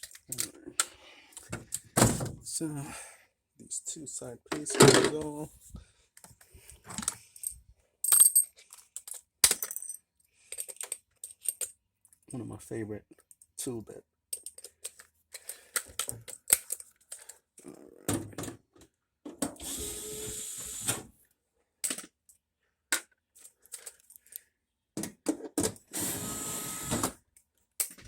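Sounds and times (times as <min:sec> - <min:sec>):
clatter of parts being handled: 0:00.0 - 0:02.2, 0:04.5 - 0:05.4, 0:06.2 - 0:12.3, 0:14.3 - 0:17.4, 0:21.8 - 0:25.8, 0:27.8 - 0:28.0.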